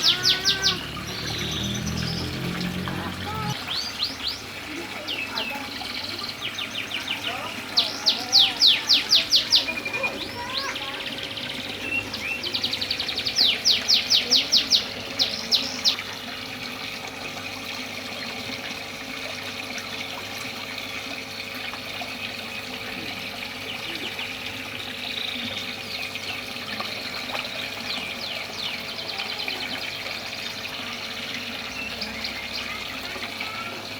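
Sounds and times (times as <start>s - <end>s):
canary singing trills: 0.0s - 16.1s
running water: 0.0s - 33.9s.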